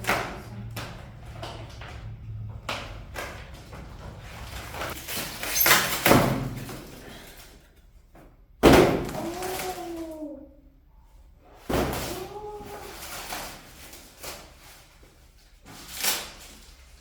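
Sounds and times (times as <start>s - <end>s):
packaging scraping and rustling: 3.9s - 7.5s, 11.8s - 17.0s.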